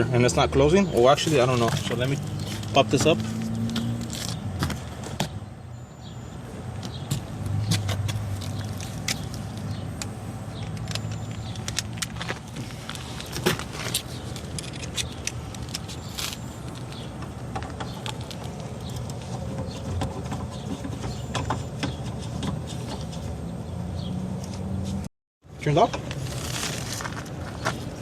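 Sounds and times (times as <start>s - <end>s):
tools and metal parts rattling: 10.6s - 23.2s.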